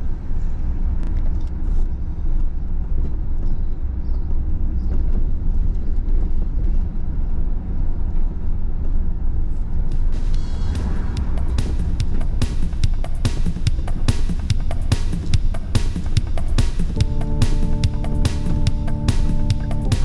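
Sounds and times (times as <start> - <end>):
car driving rumble: 17.0 - 20.0.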